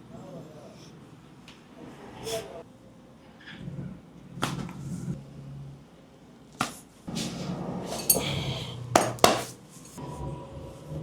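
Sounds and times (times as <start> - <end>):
sharp smacks: 6.6 - 6.8.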